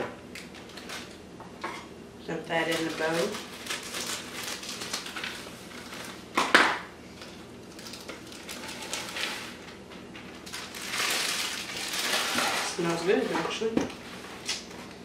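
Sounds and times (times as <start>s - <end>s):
cake mix pouring into bowl: 10.4s - 12.8s.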